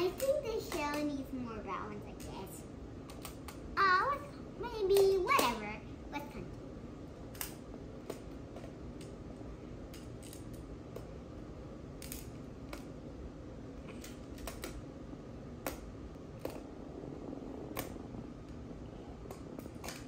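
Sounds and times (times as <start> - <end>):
low background hum: 0.0 - 20.0.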